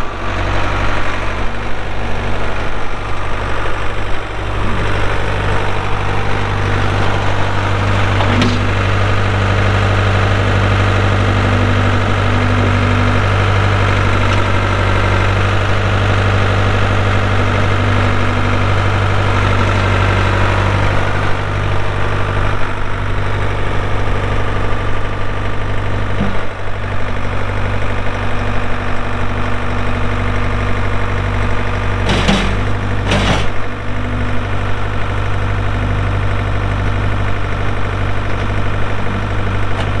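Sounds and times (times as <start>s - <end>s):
diesel engine running: 0.0s - 40.0s
sharp knocks: 32.1s - 33.6s.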